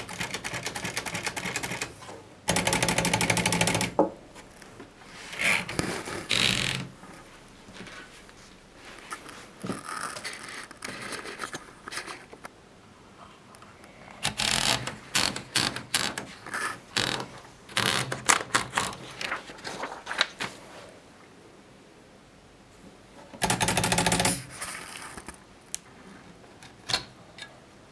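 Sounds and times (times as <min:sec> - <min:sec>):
typewriter clacking: 0:00.0 - 0:04.7, 0:14.2 - 0:19.4, 0:23.4 - 0:25.4.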